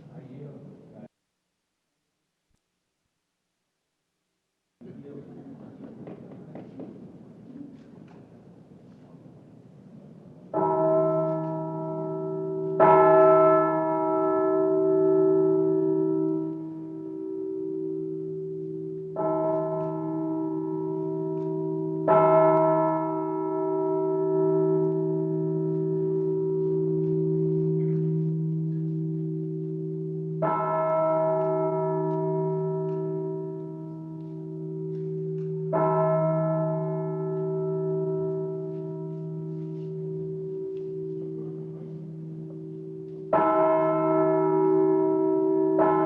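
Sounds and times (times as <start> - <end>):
large bell tolling: 10.5 - 46.0.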